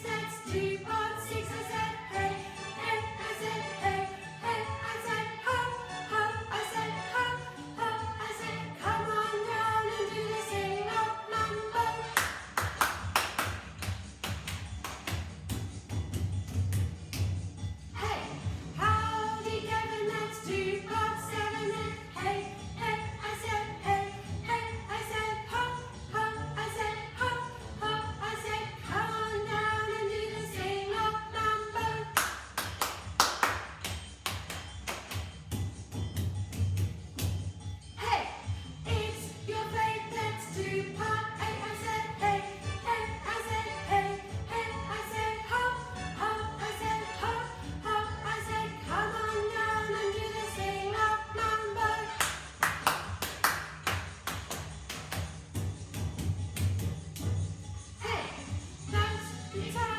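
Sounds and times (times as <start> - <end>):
woman singing: 0.0 - 12.2, 18.0 - 32.2, 38.0 - 52.4, 58.0 - 59.9
music with sung melody: 0.0 - 59.9
rhythmic clapping: 12.1 - 17.6, 32.1 - 37.6, 52.0 - 57.6.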